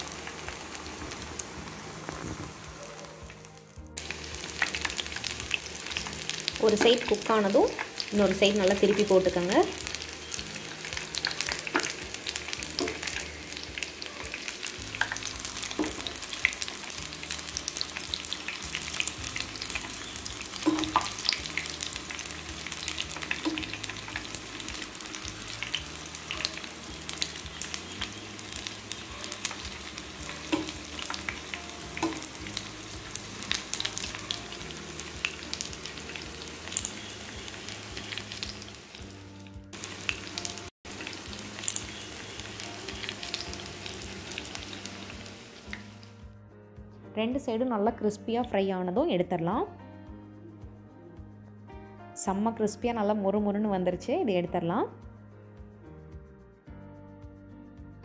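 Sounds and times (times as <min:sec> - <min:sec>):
food deep-frying in hot oil: 0:00.0 - 0:46.2.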